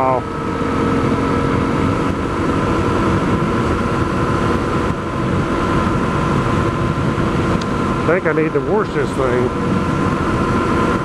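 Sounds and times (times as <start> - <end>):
motorcycle engine running: 0.0 - 11.0
wind and road noise: 0.0 - 11.0.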